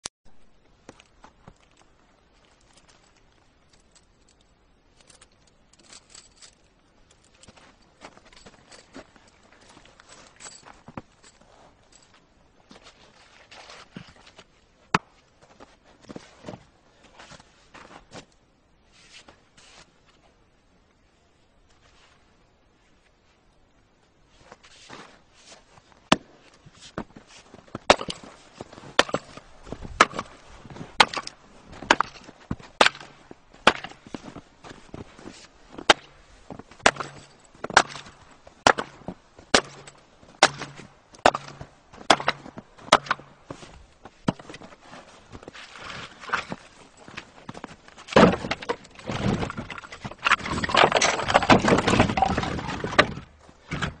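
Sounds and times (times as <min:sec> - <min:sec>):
wood chopping cracks: 0:27.9 - 0:28.3, 0:28.9 - 0:29.4, 0:30.0 - 0:30.3, 0:31.0 - 0:34.0, 0:36.8 - 0:43.3, 0:48.1 - 0:54.0
firewood machine knocking wood: 0:48.1 - 0:54.0
loud wood crack: 0:48.1 - 0:54.0.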